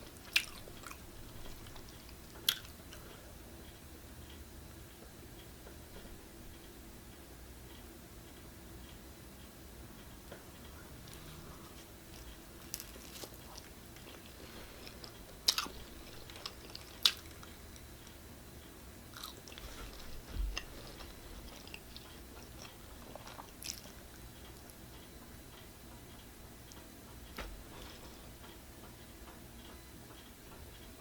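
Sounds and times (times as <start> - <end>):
person chewing pizza: 0.0 - 3.2, 10.7 - 18.1, 19.1 - 24.7.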